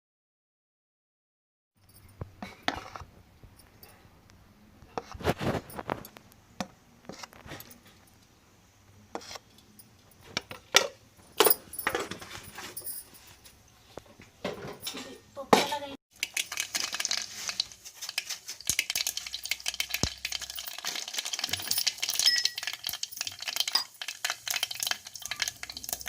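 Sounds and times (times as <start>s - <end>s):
metal utensils and pots clattering: 9.2s - 26.0s.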